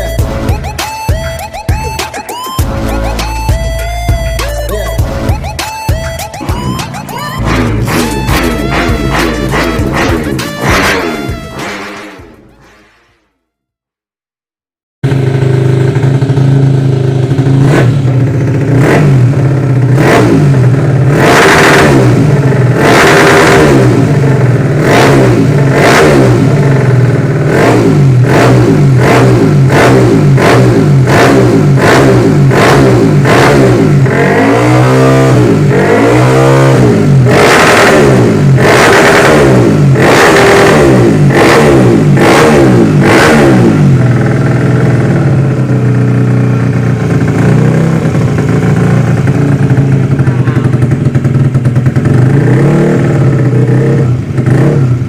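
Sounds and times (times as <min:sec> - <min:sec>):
motorcycle engine idling and revving: 0:00.0 - 0:12.9, 0:15.0 - 0:55.0.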